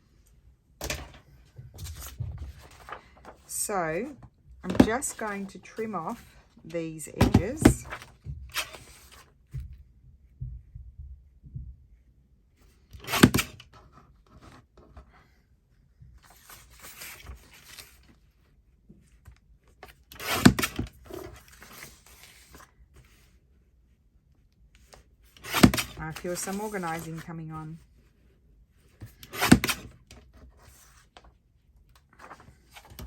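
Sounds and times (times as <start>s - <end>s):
paper rustling: 1.7s - 6.4s, 24.8s - 27.4s, 31.9s - 33.0s.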